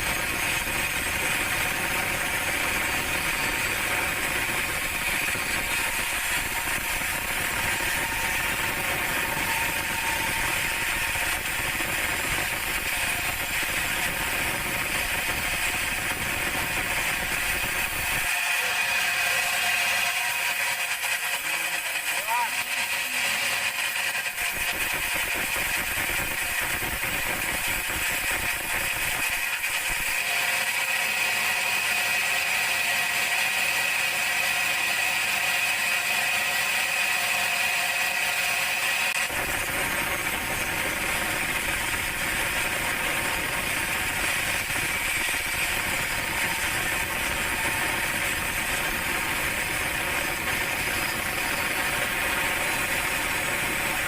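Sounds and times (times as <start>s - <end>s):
band saw cutting log: 0.0s - 54.0s
high blade whine: 0.0s - 54.0s.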